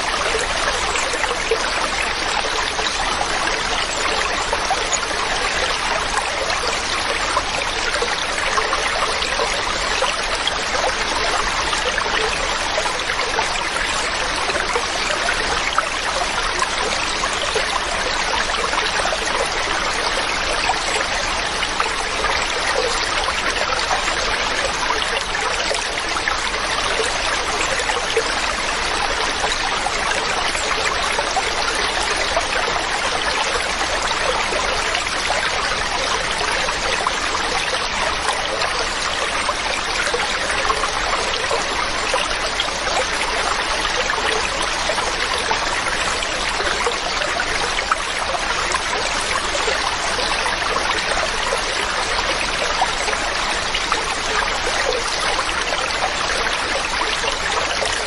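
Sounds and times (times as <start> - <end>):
mountain water rushing: 0.0 - 58.0.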